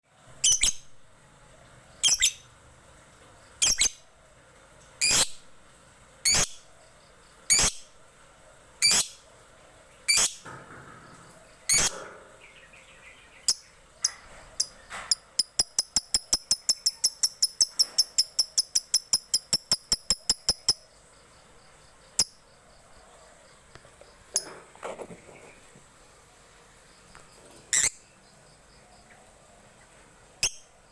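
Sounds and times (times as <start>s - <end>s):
lovebird calling and chirping: 0.4s - 1.0s, 2.0s - 2.6s, 3.6s - 4.1s, 5.0s - 5.5s, 6.2s - 6.8s, 7.5s - 8.0s, 8.8s - 9.2s, 10.1s - 10.5s, 11.5s - 21.0s, 27.1s - 28.2s, 30.4s - 30.8s.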